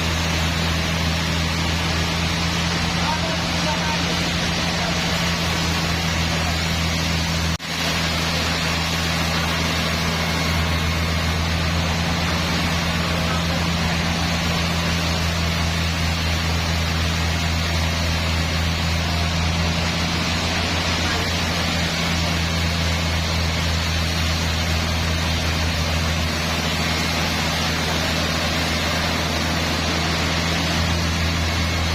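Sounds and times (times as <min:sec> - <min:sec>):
sawmill machinery running: 0:00.0 - 0:31.9.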